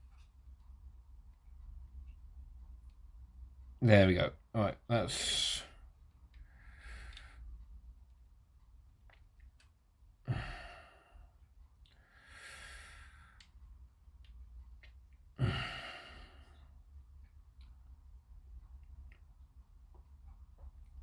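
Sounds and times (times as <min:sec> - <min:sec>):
faint small clicks: 0:06.3 - 0:07.8, 0:09.0 - 0:09.8, 0:13.3 - 0:13.6
man sighing heavily: 0:10.3 - 0:11.1, 0:15.4 - 0:16.5.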